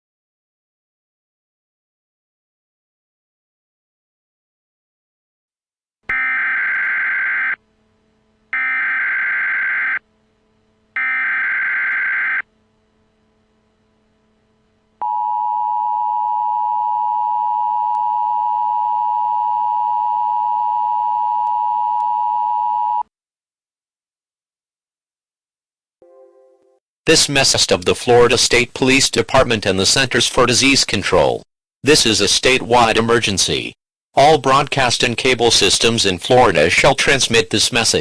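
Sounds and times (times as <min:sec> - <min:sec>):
data tone bursts: 0:06.1 - 0:07.6, 0:08.6 - 0:10.0, 0:11.0 - 0:12.5
steady attention tone: 0:06.1 - 0:23.0.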